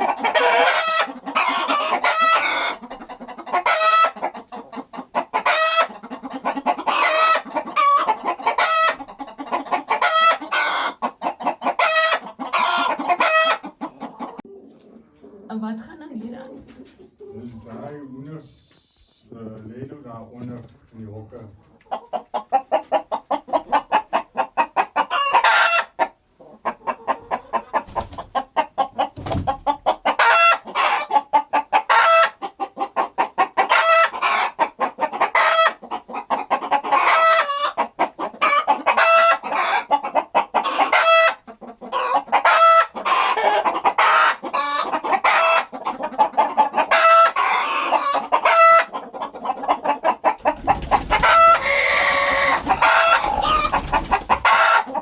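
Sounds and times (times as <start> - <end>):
short high-pitched chicken calls: 0.0 - 4.4, 5.2 - 14.4, 33.6 - 55.0
chickens clucking: 0.0 - 55.0.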